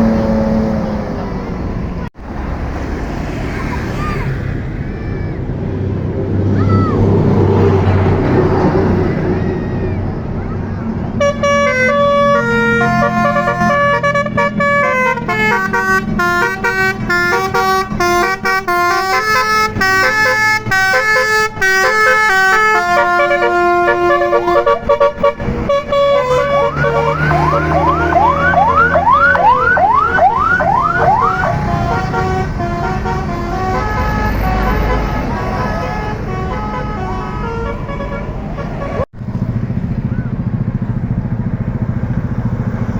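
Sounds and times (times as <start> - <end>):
bus engine running: 0.0 - 42.9
air horn playing a melody: 11.2 - 39.1
air horn whoops: 11.2 - 39.1.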